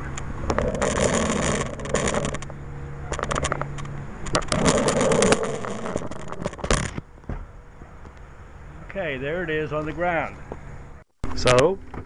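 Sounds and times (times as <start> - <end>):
rope rubbing and scraping: 0.4 - 7.0.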